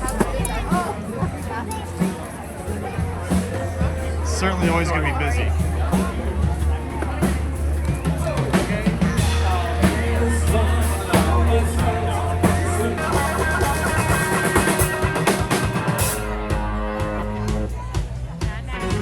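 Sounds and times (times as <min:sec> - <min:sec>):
drum kit beat: 0:00.0 - 0:19.0
guitar: 0:00.0 - 0:19.0
heavy bass line: 0:02.7 - 0:19.0.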